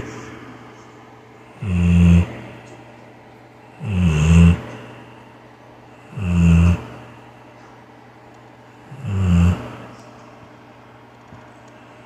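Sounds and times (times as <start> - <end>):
dog snoring: 1.6 - 2.6, 3.8 - 4.8, 6.0 - 7.1, 8.8 - 10.0.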